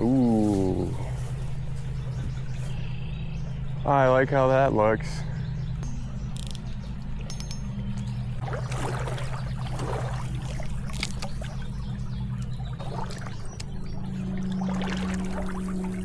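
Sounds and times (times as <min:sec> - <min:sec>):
steady low hum: 0:00.0 - 0:16.0
stream water trickling and splashing: 0:06.4 - 0:16.0.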